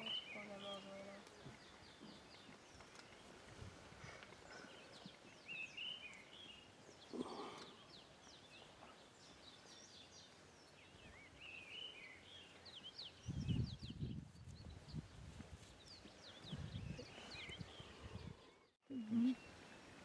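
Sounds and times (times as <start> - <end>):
birds chirping and whistling: 4.0 - 14.9, 15.8 - 18.6.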